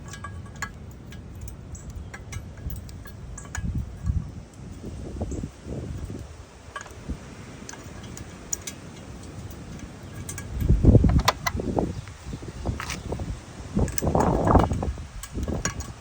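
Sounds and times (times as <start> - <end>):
metallic clinks of tools: 0.0 - 4.3, 5.4 - 11.5
knocking and rustling handling: 10.2 - 12.1.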